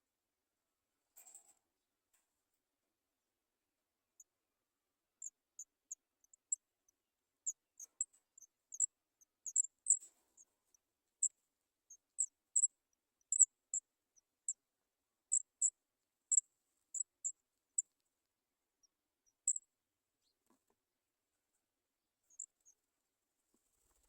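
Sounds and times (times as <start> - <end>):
nestlings peeping: 7.4 - 10.5, 11.9 - 13.8, 15.3 - 15.7, 19.3 - 19.6, 22.3 - 22.8.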